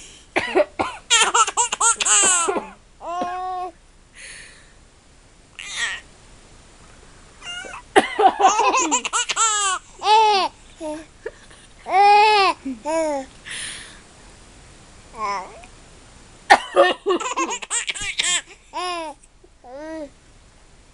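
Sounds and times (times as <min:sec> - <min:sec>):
baby laughing and squealing: 0:01.1 - 0:02.5, 0:05.6 - 0:06.0, 0:07.4 - 0:07.9, 0:08.5 - 0:10.5, 0:17.2 - 0:19.1.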